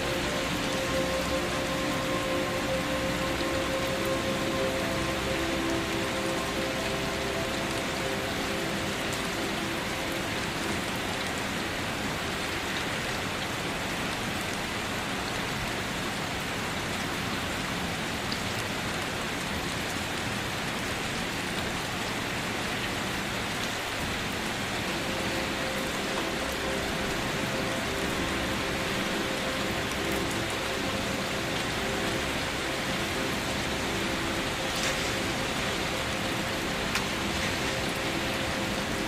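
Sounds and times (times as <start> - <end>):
gentle rain: 0.0 - 39.0.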